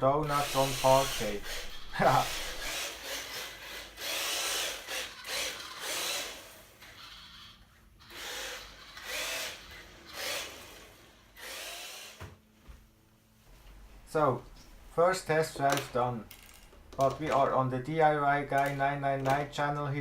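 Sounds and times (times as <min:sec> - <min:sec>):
electric motor whining: 0:00.2 - 0:07.1.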